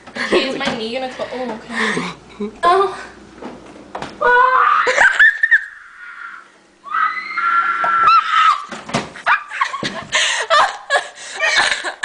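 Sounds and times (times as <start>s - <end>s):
girl screaming: 4.2s - 8.7s
girl laughing and shrieking: 4.2s - 11.6s.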